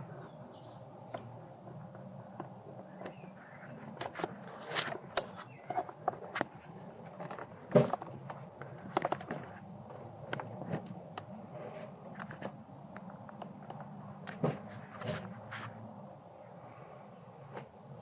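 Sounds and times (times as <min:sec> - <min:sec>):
hands handling engine parts: 0:03.8 - 0:11.0.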